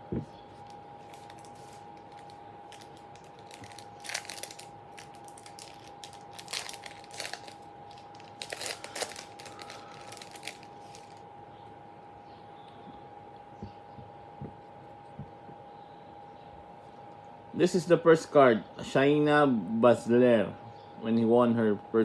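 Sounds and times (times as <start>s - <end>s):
wrapper tearing and crinkling: 0.6s - 11.2s.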